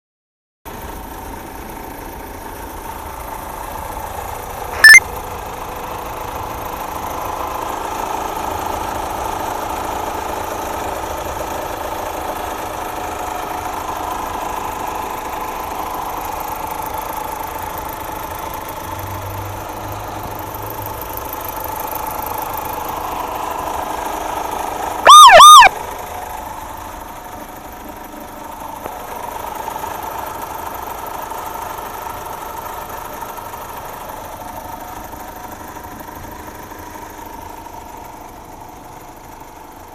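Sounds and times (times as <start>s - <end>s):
car engine idling: 0.7s - 39.9s
double pitched chirp: 4.8s - 5.0s, 25.0s - 25.7s
short loud beep: 4.8s - 5.0s, 25.0s - 25.7s.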